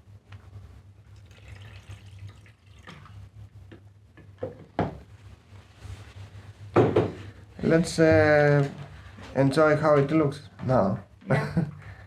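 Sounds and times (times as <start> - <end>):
water trickling into fountain basin: 1.2 - 3.2.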